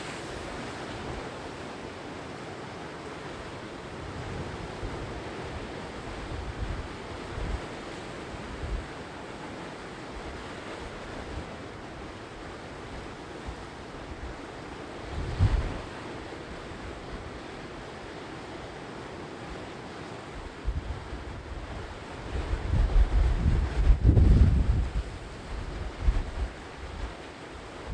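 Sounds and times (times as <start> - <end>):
sea surf washing onto shore: 0.0 - 27.9
wind buffeting microphone: 15.1 - 15.9, 20.4 - 27.9.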